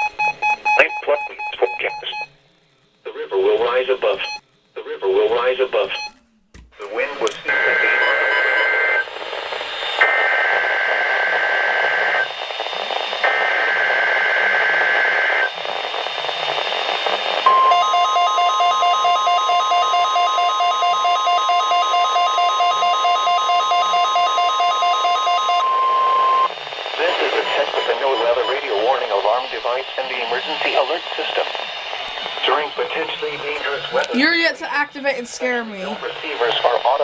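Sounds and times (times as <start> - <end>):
static: 6.8 - 37.0
steady warning alarm tone: 10.0 - 31.9
rapid pulsing electronic beep: 17.5 - 29.4.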